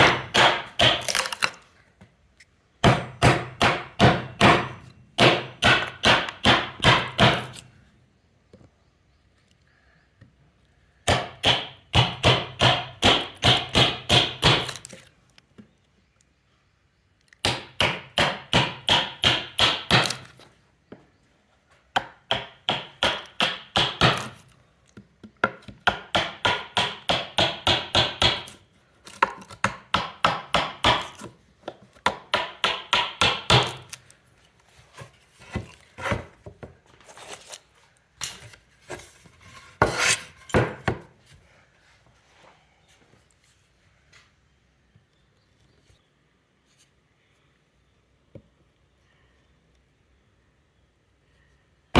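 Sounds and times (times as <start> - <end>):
hammer striking chisel: 0.0 - 1.3, 2.8 - 7.6, 11.1 - 14.9, 17.4 - 20.3, 22.0 - 24.4, 25.4 - 28.6, 29.2 - 31.4, 32.0 - 34.0.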